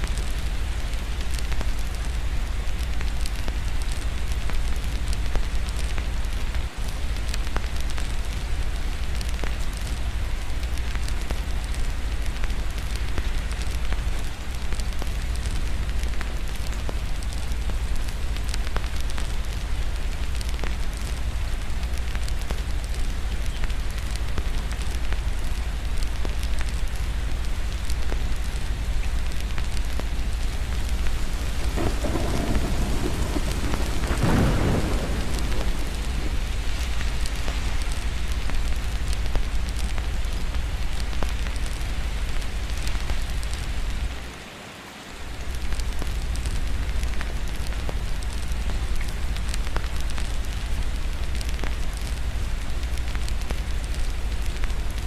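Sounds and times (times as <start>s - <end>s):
steady rain: 0.0s - 55.0s
fireplace crackling and popping: 10.6s - 44.3s, 45.4s - 55.0s
low rumble: 30.0s - 39.8s
thunder rolling: 30.8s - 39.4s.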